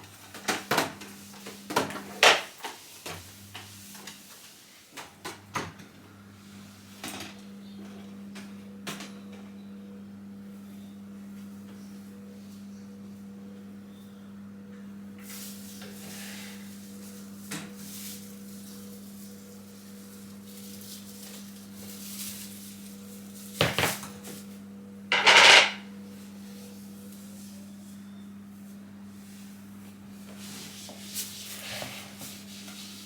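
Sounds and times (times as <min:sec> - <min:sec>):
hard objects clattering: 0:25.1 - 0:25.8.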